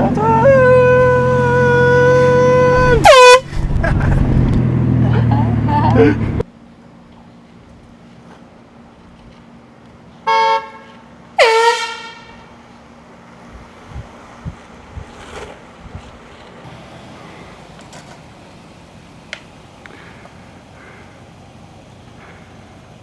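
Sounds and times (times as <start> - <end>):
handheld air horn blasts: 0.0 - 3.5, 10.3 - 12.5.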